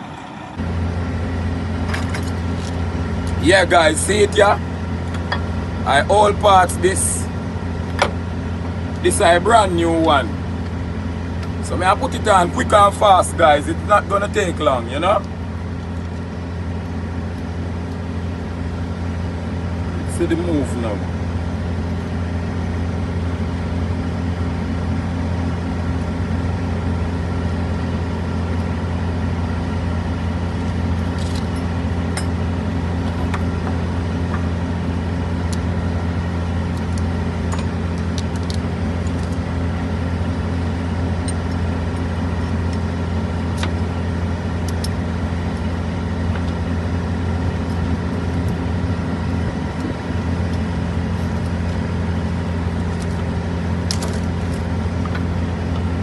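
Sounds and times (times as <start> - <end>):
truck engine idling: 0.0 - 56.0.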